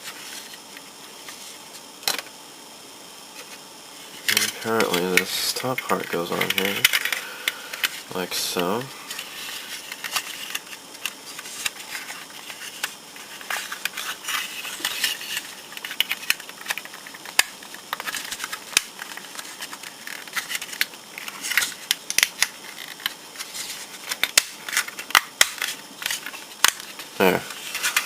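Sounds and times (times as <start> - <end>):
plastic parts rustling and scraping: 0.0 - 2.3, 3.3 - 28.0
plastic parts clicking: 4.3 - 8.0.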